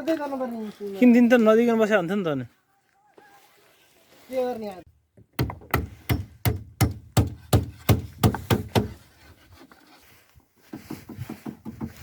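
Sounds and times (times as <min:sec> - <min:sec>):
sharp knocks: 0:05.2 - 0:09.0.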